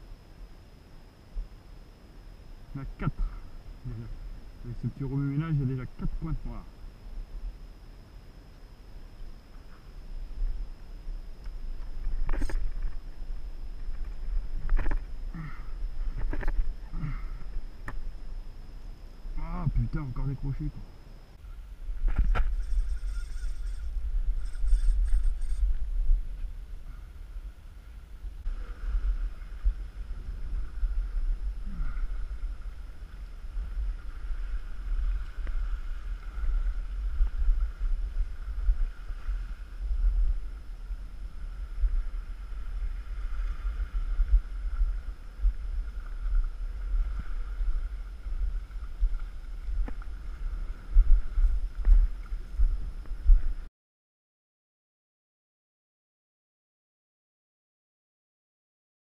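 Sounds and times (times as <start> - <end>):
faint high hum: 0.0 - 53.7
wind buffeting microphone: 21.8 - 53.7.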